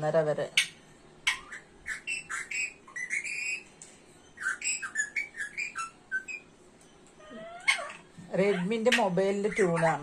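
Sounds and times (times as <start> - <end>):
parrot whistling a tune: 1.3 - 3.6, 4.4 - 6.5.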